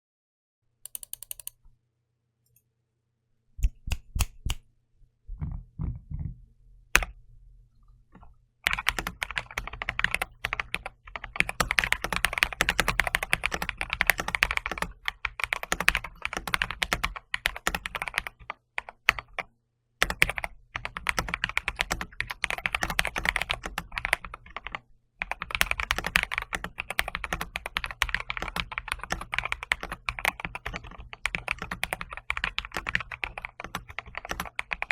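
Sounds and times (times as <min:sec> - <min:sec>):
typing on keyboard: 0:00.9 - 0:01.6, 0:08.7 - 0:34.9.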